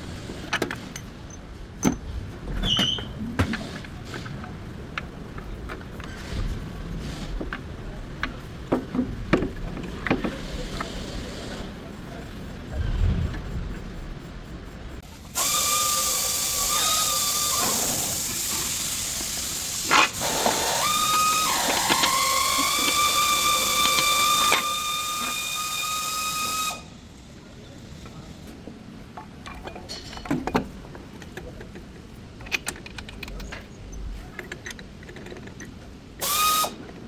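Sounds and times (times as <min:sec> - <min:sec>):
air tool hissing and whining: 0:10.1 - 0:27.3, 0:36.2 - 0:36.8.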